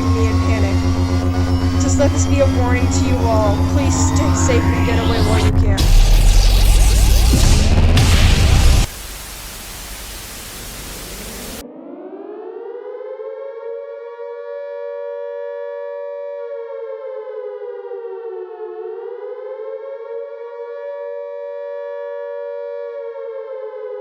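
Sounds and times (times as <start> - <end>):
civil defense siren wailing: 0.0 - 5.9, 12.6 - 23.9
loud music hit: 0.0 - 11.6
static hiss: 5.7 - 11.6.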